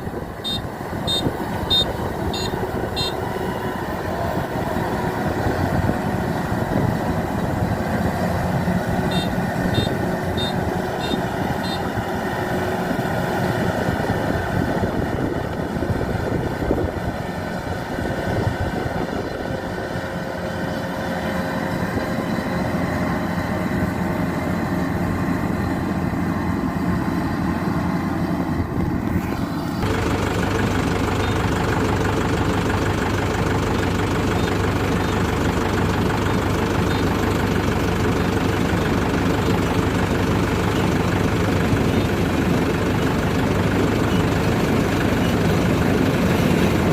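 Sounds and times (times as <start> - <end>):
combine harvester diesel engine: 0.0 - 46.9
high beeps: 0.4 - 3.2, 9.1 - 11.8.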